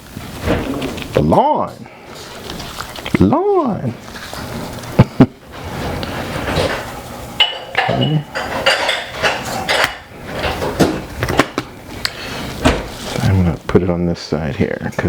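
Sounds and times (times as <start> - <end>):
dishes and utensils clinking: 6.2 - 11.6.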